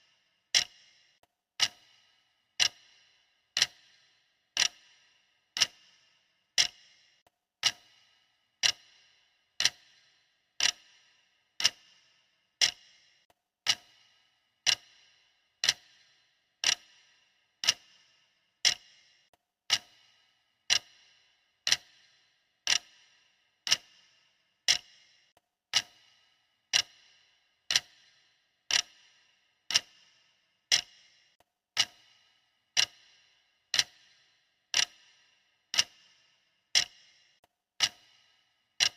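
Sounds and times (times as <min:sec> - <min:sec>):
stopwatch ticking: 0:00.0 - 0:38.9.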